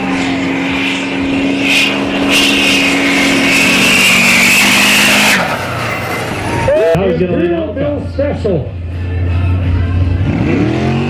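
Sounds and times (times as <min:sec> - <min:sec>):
high whine: 0:00.0 - 0:07.0
diesel trucks at full throttle: 0:00.0 - 0:11.0.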